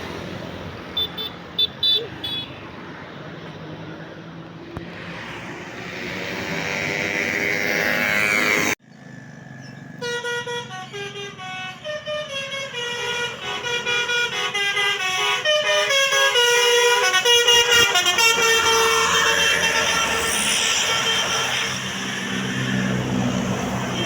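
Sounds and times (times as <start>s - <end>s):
loud rushing noise: 4.8s - 8.8s, 18.8s - 24.0s
multi-tone air horn tune: 10.0s - 22.8s, 23.4s - 24.0s.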